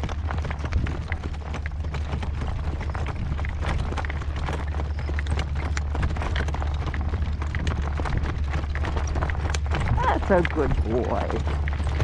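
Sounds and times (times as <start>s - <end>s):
horse hooves clip-clopping: 0.0s - 12.0s
wind rumbling on microphone: 0.0s - 12.0s.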